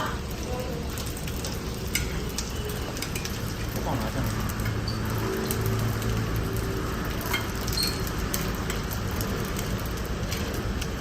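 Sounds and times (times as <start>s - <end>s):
food sizzling in a pan: 0.0s - 11.0s.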